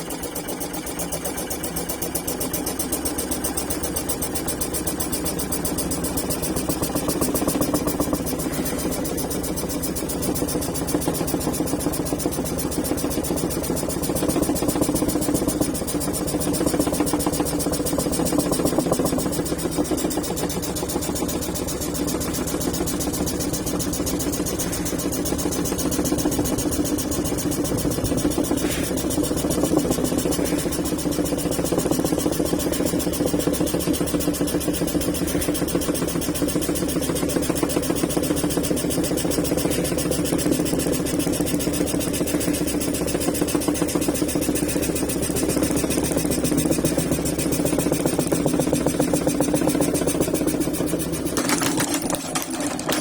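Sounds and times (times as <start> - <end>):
scroll saw cutting wood: 16.5 - 53.0.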